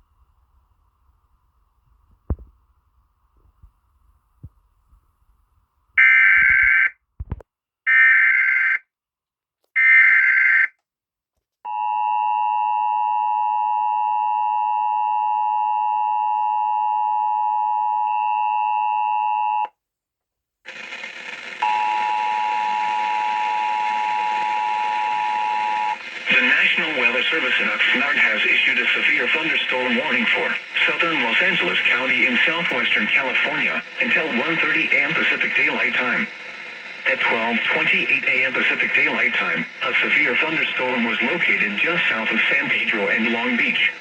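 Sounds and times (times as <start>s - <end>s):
static hiss: 25.9s - 44.0s.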